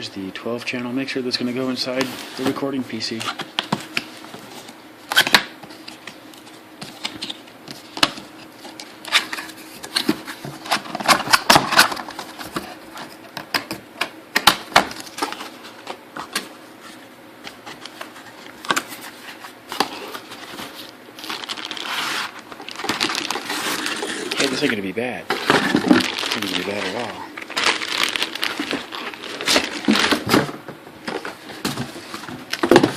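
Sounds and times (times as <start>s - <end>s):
clicks taps and rustles of handling: 1.9s - 16.5s.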